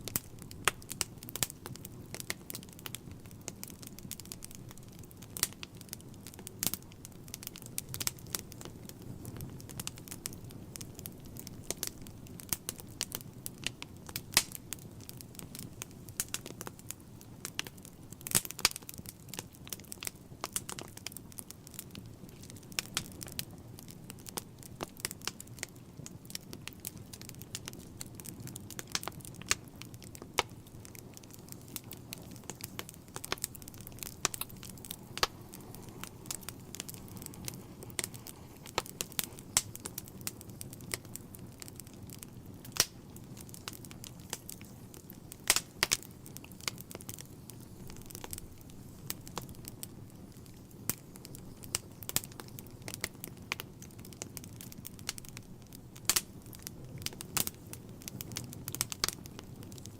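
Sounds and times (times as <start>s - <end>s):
low rush of flames: 0.0s - 59.9s
wood fire crackling: 0.0s - 59.9s.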